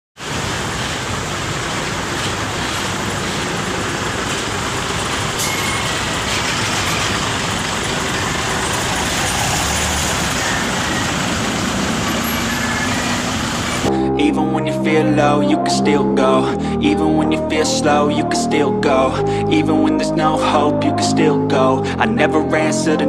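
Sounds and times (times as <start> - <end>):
bus engine running: 0.2 - 13.9
road traffic noise: 0.2 - 14.0.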